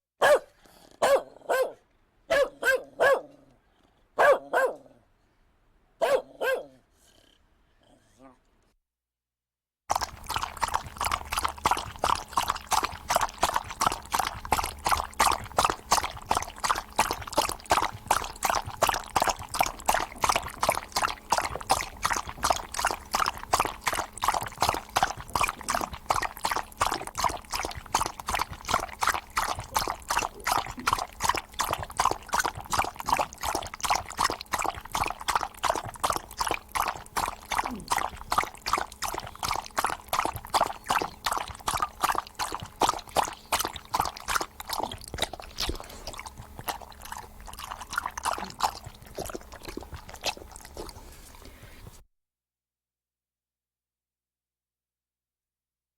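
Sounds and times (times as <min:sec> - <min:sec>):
dog lapping water: 0:09.9 - 0:52.0.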